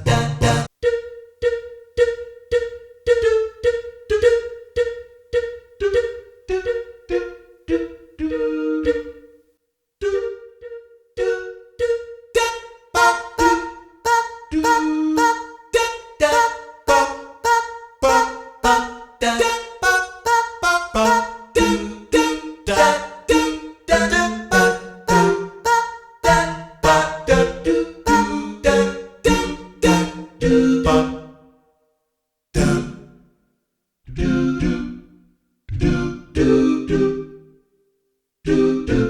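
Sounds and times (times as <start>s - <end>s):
digital piano scat voice melody: 0.0s - 1.0s, 10.6s - 31.5s, 32.6s - 33.2s, 34.2s - 35.0s, 35.7s - 37.4s, 38.5s - 39.0s.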